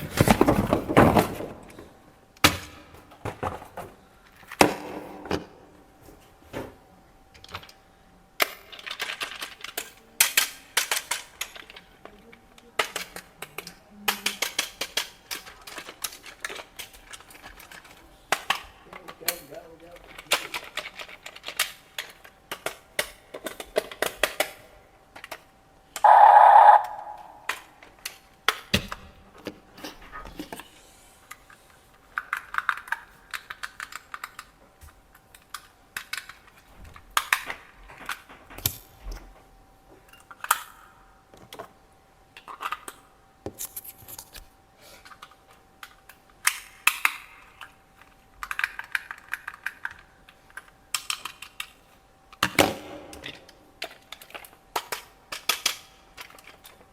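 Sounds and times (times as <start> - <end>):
faint steady tone: 26.0 - 27.7
plastic toy parts clicking: 48.4 - 51.7.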